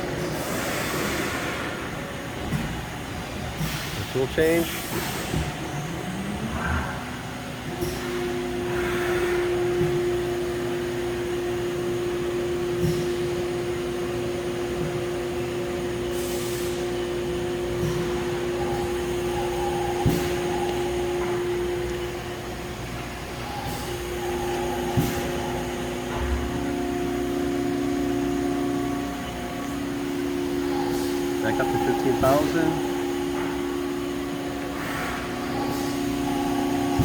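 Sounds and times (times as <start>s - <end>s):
machine noise hiss: 0.0s - 2.7s, 7.8s - 10.8s, 16.0s - 37.0s
machine whine: 0.0s - 37.0s.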